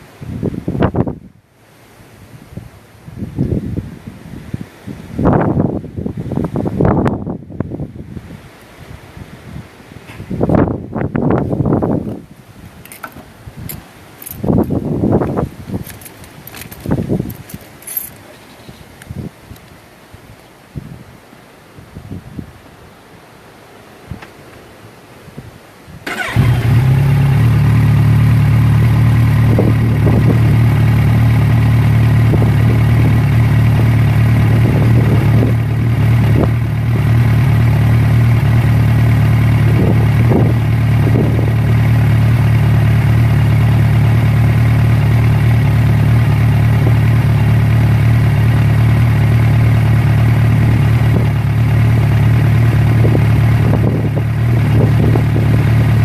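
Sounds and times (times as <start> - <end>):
engine starting and humming: 26.0 - 56.0.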